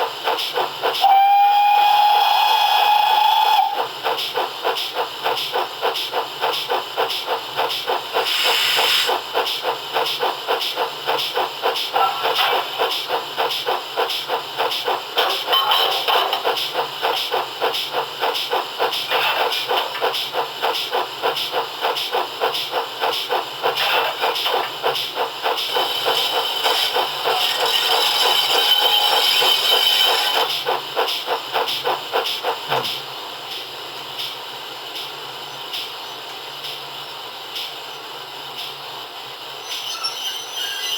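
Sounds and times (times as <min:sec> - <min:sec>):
steam locomotive exhaust chuffs: 0:00.0 - 0:39.9
hissing steam: 0:07.1 - 0:12.0.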